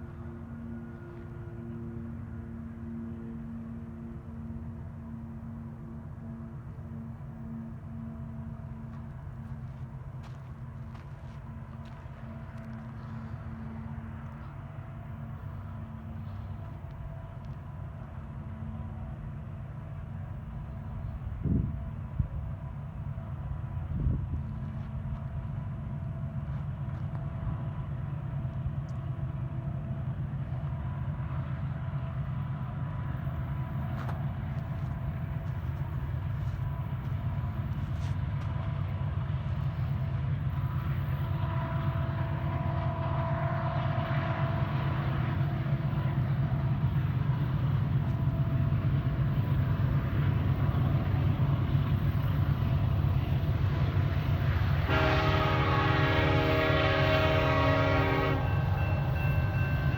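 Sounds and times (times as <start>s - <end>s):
diesel freight train rumble: 0.0s - 59.9s.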